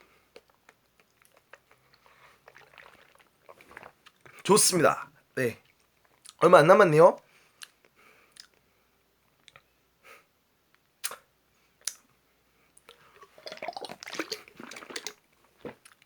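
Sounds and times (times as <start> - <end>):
squishy chewing: 0.3 - 4.4, 12.8 - 16.0
person slurping a drink: 1.6 - 4.4, 13.0 - 15.8.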